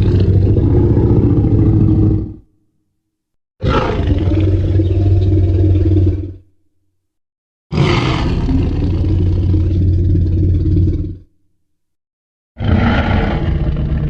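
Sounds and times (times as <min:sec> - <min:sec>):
dinosaur roar: 0:00.0 - 0:02.5, 0:03.6 - 0:06.4, 0:07.7 - 0:11.3, 0:12.6 - 0:14.0.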